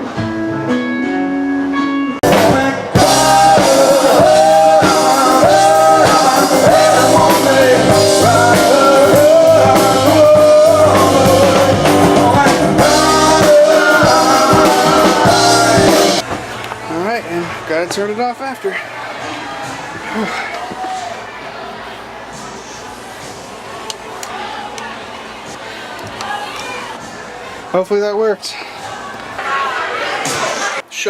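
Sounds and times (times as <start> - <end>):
rock band playing live: 0.0 - 16.4
person singing: 2.2 - 16.2.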